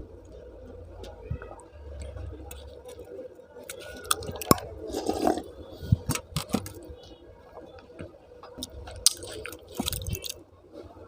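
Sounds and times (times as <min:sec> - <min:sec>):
wet chewing of soft food: 0:01.4 - 0:11.0.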